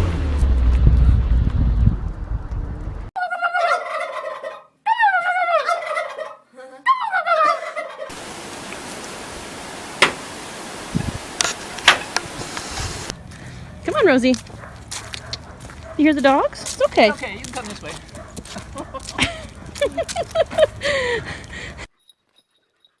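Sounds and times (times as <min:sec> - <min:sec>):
turkey gobbling: 0:03.2 - 0:08.2
background hiss: 0:08.1 - 0:14.6.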